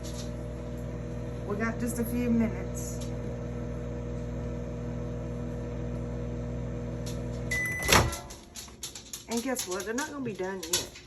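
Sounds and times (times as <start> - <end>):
microwave oven humming: 0.0 - 9.2
microwave beep: 6.0 - 8.3.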